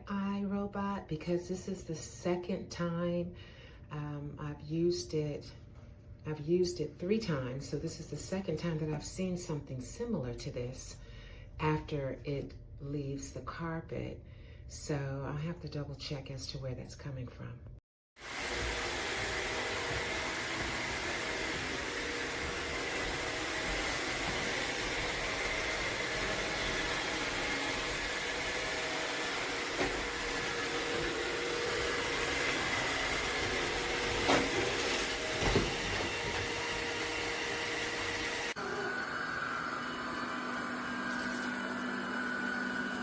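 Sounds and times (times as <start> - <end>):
robot vacuum humming: 18.2 - 43.0.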